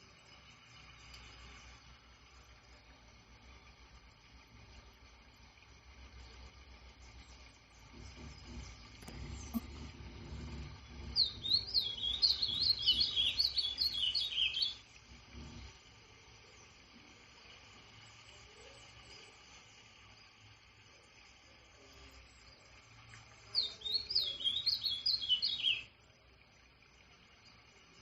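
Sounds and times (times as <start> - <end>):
songbird singing: 7.0 - 15.7, 23.4 - 26.2.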